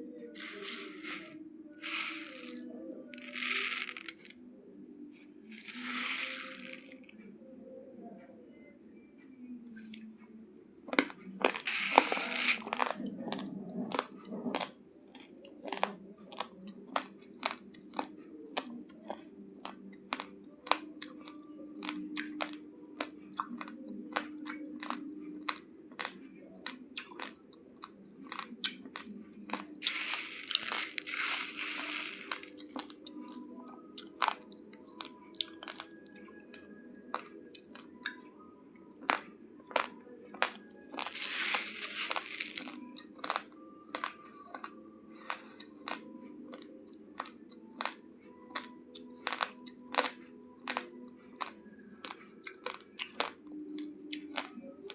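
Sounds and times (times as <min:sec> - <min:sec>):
crunching raw rice grains: 0:00.4 - 0:04.3, 0:05.5 - 0:07.1, 0:11.4 - 0:12.9, 0:28.3 - 0:32.9, 0:40.9 - 0:43.4.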